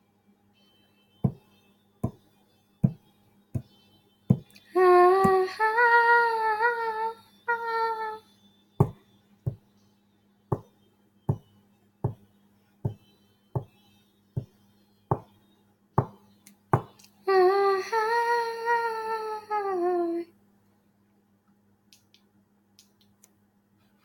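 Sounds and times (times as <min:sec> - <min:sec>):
hand taps keeping time: 0:01.2 - 0:03.0, 0:03.6 - 0:04.6, 0:08.8 - 0:09.7, 0:10.5 - 0:13.8, 0:14.4 - 0:15.4, 0:16.0 - 0:17.1
woman singing: 0:04.4 - 0:08.3, 0:17.1 - 0:20.3.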